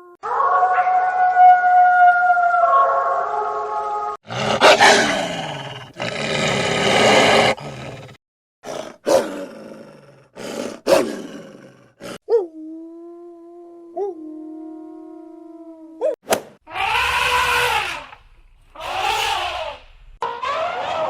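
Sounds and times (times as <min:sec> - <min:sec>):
large animal roaring and growling: 0:03.9 - 0:12.2, 0:16.7 - 0:21.0.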